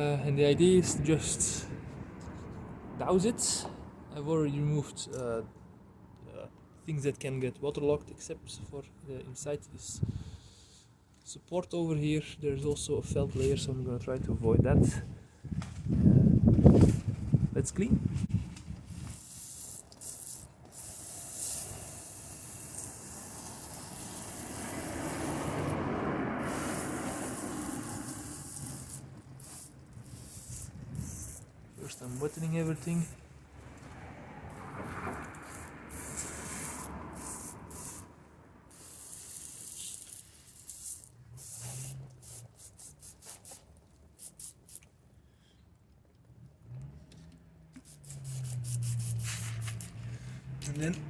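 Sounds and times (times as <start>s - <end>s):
spray bottle squirts: 18.9s - 25.8s, 26.4s - 33.2s, 34.5s - 38.0s, 38.7s - 44.9s, 47.8s - 50.1s.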